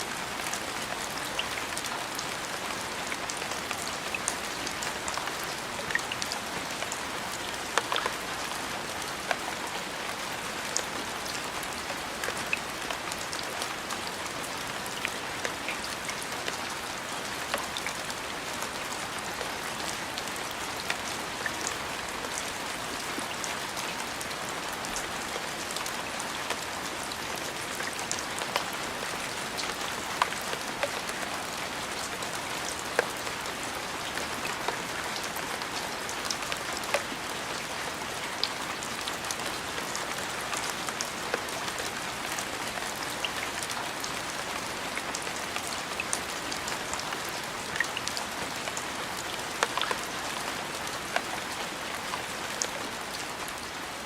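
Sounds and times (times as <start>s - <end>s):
steady rain hiss: 0.0s - 54.0s
raindrops ticking on surface: 0.2s - 54.0s.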